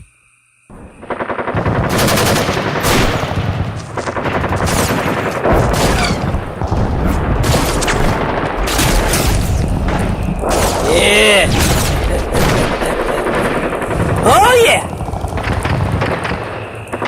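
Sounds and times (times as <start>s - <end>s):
rapid sharp bangs: 0.7s - 17.0s.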